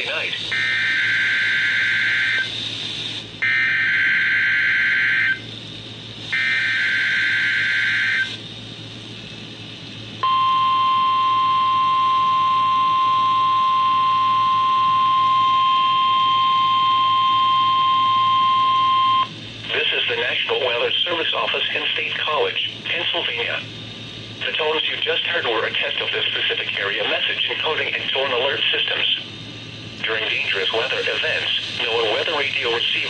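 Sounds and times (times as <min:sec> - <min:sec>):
steady warning alarm tone: 0:00.0 - 0:05.5, 0:06.3 - 0:08.4, 0:10.2 - 0:33.0
digital header tones: 0:10.2 - 0:19.3.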